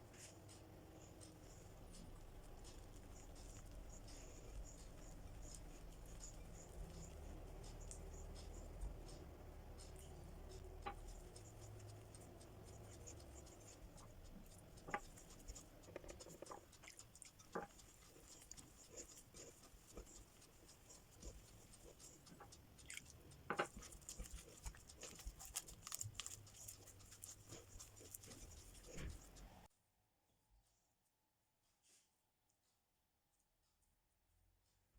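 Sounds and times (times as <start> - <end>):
kitchen clicks and taps: 23.4 - 23.8.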